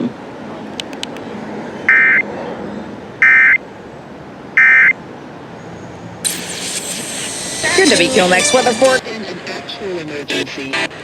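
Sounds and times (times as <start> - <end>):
low hiss: 6.3 - 9.1
digital data warble bursts: 6.3 - 9.7.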